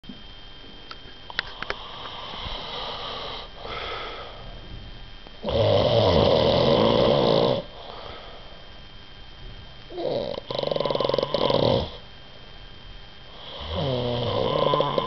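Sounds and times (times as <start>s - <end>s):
person snoring: 1.6s - 4.5s, 5.4s - 8.6s, 9.9s - 12.0s, 13.3s - 15.0s.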